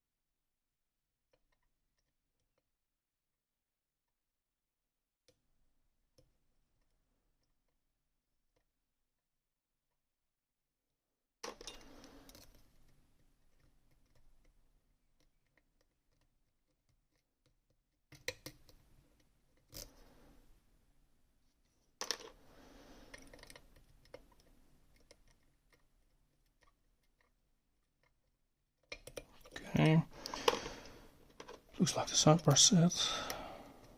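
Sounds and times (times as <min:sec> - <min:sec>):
lock picks clicking in a lock: 0:28.8 - 0:29.6.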